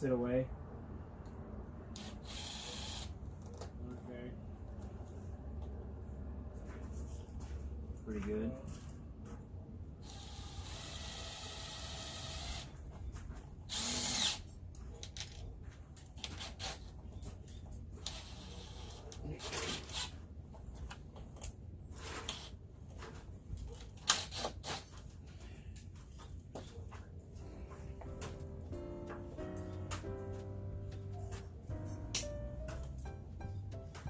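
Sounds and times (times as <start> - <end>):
cordless drill driving screw: 2.0 - 3.1, 10.0 - 12.7, 13.7 - 14.4, 19.7 - 20.1.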